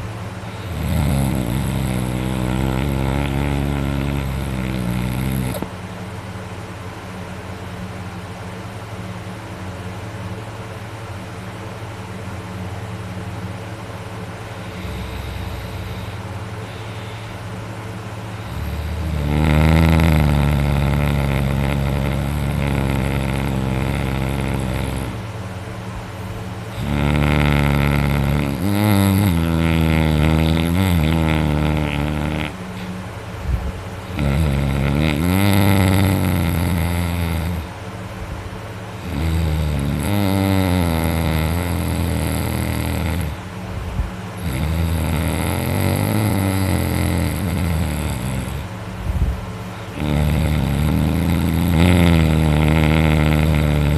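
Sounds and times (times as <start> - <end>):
person snoring loudly: 0.0 - 5.7, 14.5 - 17.5, 18.3 - 25.3, 26.7 - 32.9, 34.0 - 37.8, 39.0 - 43.5, 44.4 - 48.8, 49.9 - 53.9.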